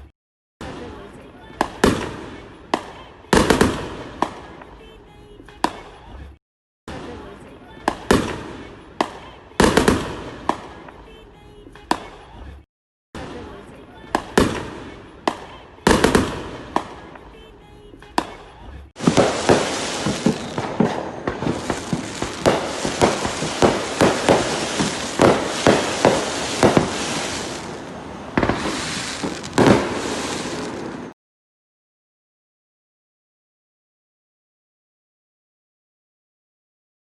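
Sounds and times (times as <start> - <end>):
fireworks bangs: 0.6 - 5.0, 6.9 - 11.2, 13.2 - 31.2
fireworks crackling: 0.6 - 6.3, 6.9 - 12.4, 13.2 - 31.2.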